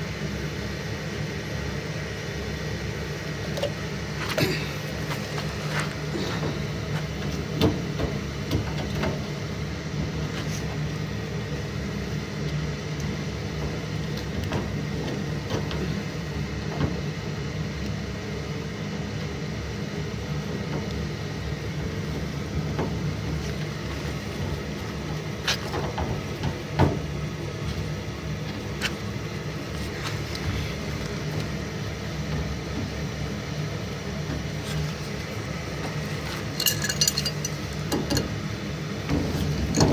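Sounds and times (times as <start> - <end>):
furnace humming: 0.0 - 39.9
parts clicking and knocking: 35.8 - 38.4, 39.0 - 39.9.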